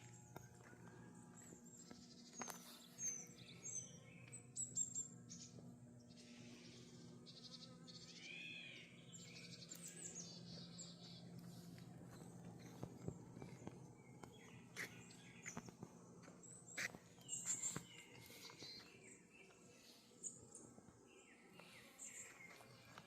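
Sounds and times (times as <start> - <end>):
birds chirping and calling: 0.0 - 23.0
steady low hum: 0.0 - 23.0.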